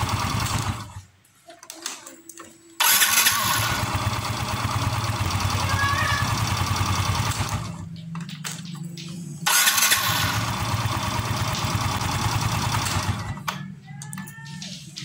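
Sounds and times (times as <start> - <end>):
scooter engine running: 0.0 - 1.0, 2.8 - 7.9, 9.4 - 13.5.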